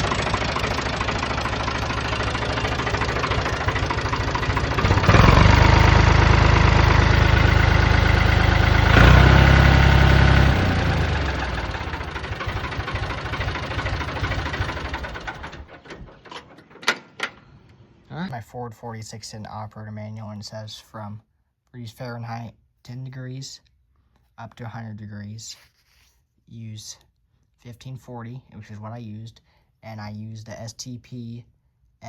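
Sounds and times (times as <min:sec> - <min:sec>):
diesel tractor engine revving: 0:00.0 - 0:17.9.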